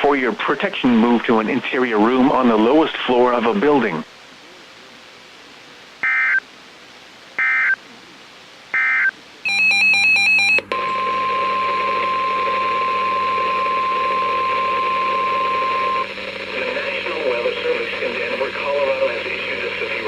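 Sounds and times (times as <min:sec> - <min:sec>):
screeching data tone bursts: 0:06.0 - 0:06.4, 0:07.4 - 0:07.8, 0:08.8 - 0:10.6
steady warning alarm tone: 0:06.0 - 0:06.4, 0:07.4 - 0:07.8, 0:08.8 - 0:16.1
warbling data tones: 0:06.0 - 0:06.4.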